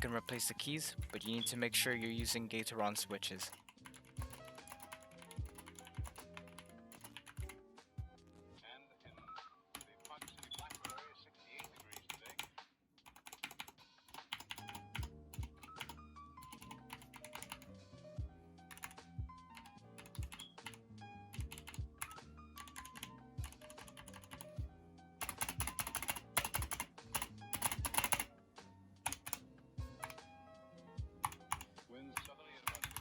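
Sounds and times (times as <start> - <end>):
background music: 0.0 - 33.0
mechanical keyboard typing: 1.0 - 2.6, 3.2 - 7.6, 9.8 - 11.0, 11.6 - 17.7, 18.7 - 24.6, 25.2 - 28.3, 29.0 - 30.2, 31.2 - 33.0.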